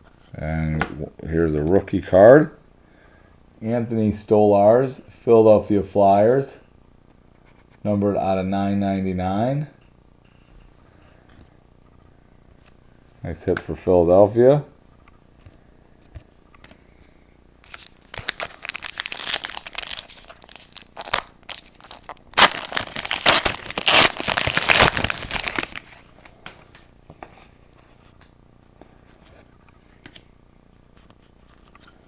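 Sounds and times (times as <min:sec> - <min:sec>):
card pack wrapper crinkling and tearing: 0:17.6 - 0:26.2.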